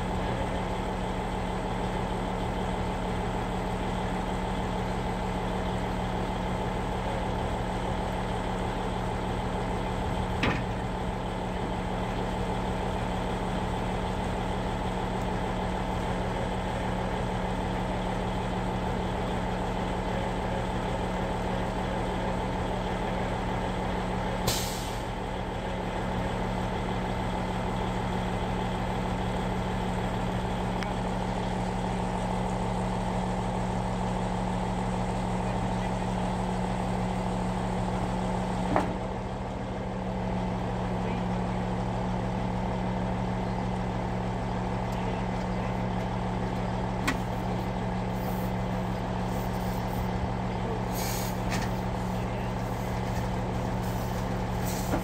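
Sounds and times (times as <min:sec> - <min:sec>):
heavy engine idling: 0:00.0 - 0:55.0
sharp hiss of released air: 0:24.5 - 0:25.0, 0:50.9 - 0:51.5.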